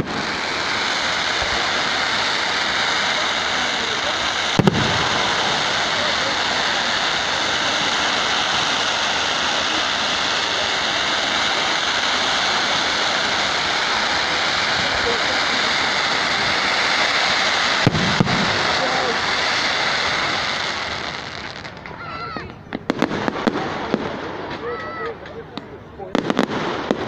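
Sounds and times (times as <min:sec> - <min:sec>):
sharp firework bang: 0:00.0 - 0:16.6, 0:17.2 - 0:19.4
fireworks hissing: 0:00.0 - 0:27.0.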